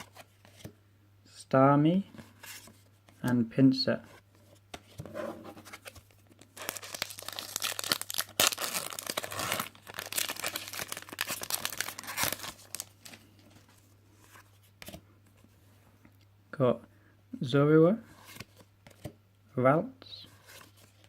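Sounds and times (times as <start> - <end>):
foil wrapper tearing and crinkling: 6.6 - 13.0.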